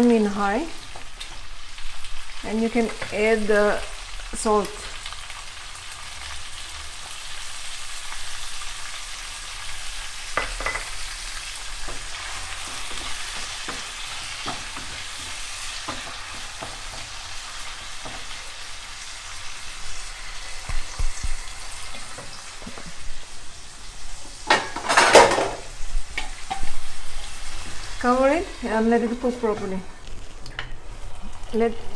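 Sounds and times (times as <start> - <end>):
food sizzling in a pan: 0.0 - 31.9
spoon scraping and knocking pan: 2.7 - 3.7, 10.3 - 23.2, 24.2 - 29.9.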